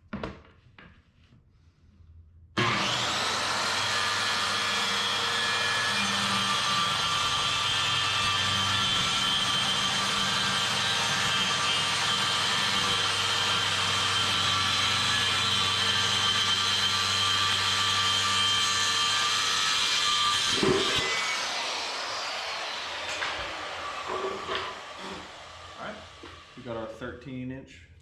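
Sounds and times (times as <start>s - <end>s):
knock: 0.1s - 0.5s
electric power saw cutting wood: 2.6s - 26.8s.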